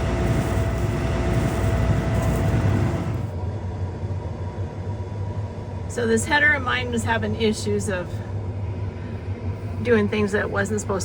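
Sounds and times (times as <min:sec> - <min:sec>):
hissy steady tones: 0:00.0 - 0:03.4
heavy vehicle engine running: 0:00.0 - 0:03.5
low steady hum: 0:00.0 - 0:11.0.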